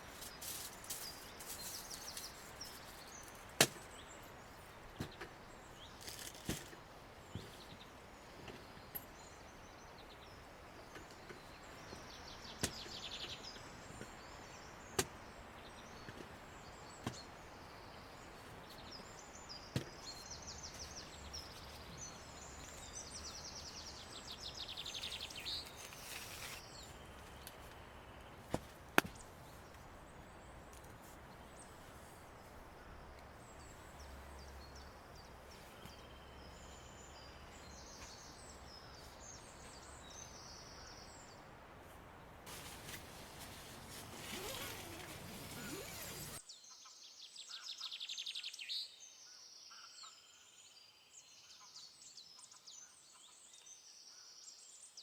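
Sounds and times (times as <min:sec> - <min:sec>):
birds trilling: 0:42.8 - 0:46.4.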